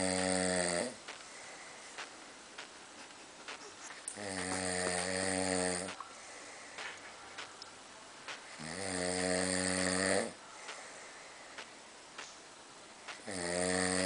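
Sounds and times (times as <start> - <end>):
person snoring: 0.0 - 1.0, 4.1 - 6.0, 8.6 - 10.4, 13.2 - 14.0.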